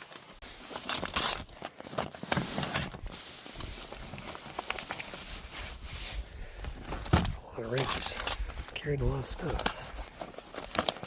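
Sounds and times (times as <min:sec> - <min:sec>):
metal tools clinking and rattling: 0:00.6 - 0:03.1, 0:07.6 - 0:09.8.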